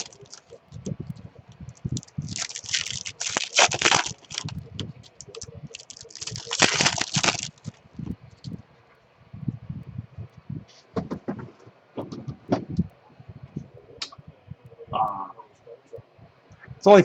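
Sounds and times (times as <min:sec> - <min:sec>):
plastic wrapping crinkling: 0:00.0 - 0:08.6.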